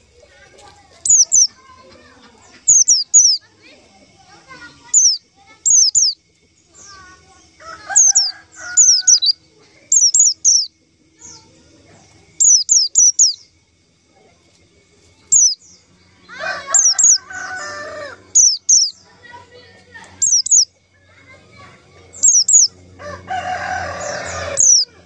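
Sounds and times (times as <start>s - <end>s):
small bird calling high notes: 1.0s - 1.8s, 2.5s - 3.5s, 4.5s - 11.5s, 12.4s - 13.5s, 15.3s - 20.8s, 21.6s - 25.0s
rooster crowing: 7.5s - 9.4s, 16.3s - 18.8s, 22.3s - 25.0s.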